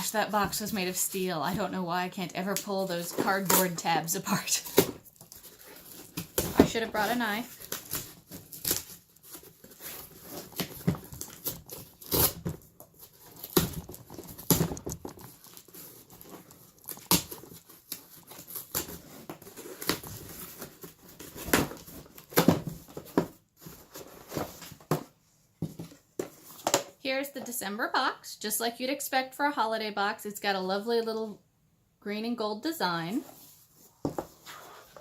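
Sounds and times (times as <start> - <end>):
cardboard box tearing and crinkling: 3.0 - 24.8.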